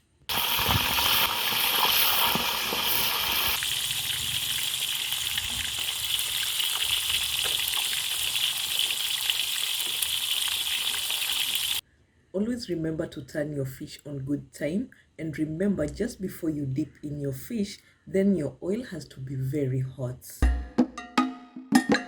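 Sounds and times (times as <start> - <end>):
fish sizzling in hot oil: 0.3 - 11.8.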